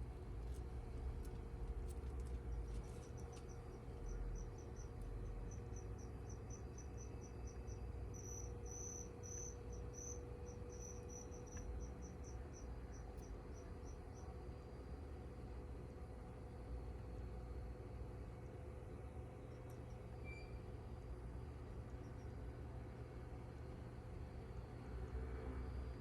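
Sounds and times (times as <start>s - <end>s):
faint electrical hum: 0.0s - 26.0s
cricket chirping: 2.5s - 14.5s.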